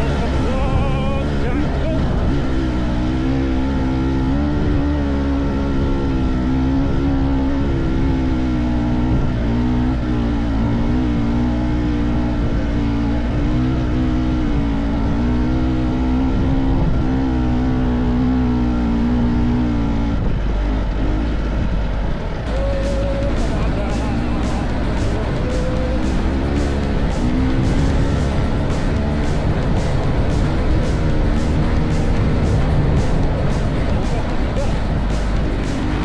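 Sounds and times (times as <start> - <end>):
motorcycle engine running: 0.0 - 36.0.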